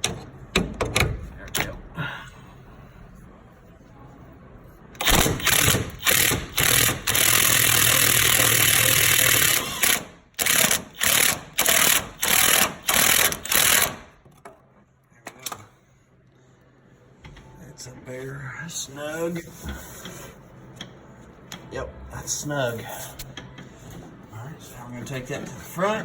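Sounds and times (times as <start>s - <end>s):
electric impact wrench bursts: 5.0s - 14.1s.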